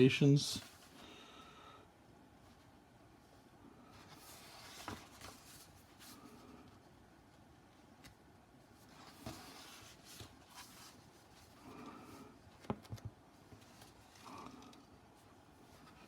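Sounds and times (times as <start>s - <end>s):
book pages rustling: 3.9s - 16.0s.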